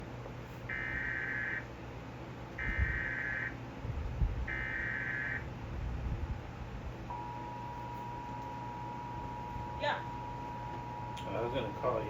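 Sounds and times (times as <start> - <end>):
shrill digital data tones: 0.7 - 1.6, 2.6 - 3.6, 4.5 - 5.5.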